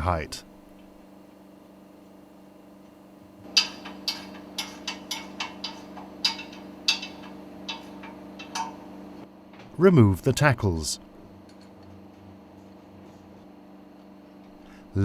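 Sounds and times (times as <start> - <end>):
steady low hum: 0.0 - 15.0
metallic clicks and knocks: 3.6 - 8.8.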